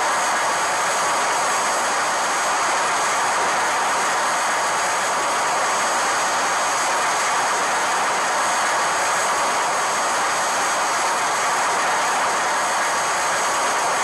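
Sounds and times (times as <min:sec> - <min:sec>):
jet-like rushing noise: 0:00.0 - 0:14.0.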